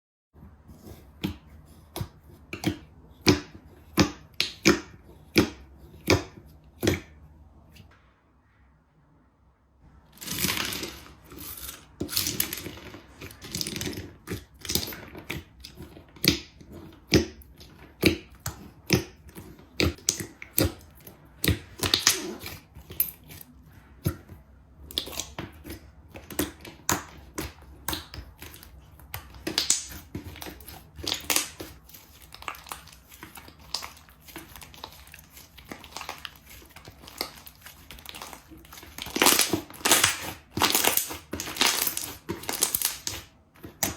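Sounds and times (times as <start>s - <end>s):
slime popping and crackling: 21.4s - 23.1s, 26.2s - 43.9s.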